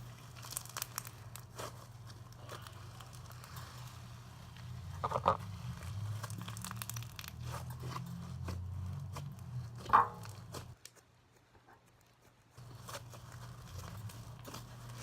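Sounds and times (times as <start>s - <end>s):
slime crackling and popping: 0.0s - 4.0s, 5.0s - 11.0s
slime squeezed and stretched: 0.0s - 4.0s, 4.8s - 9.2s.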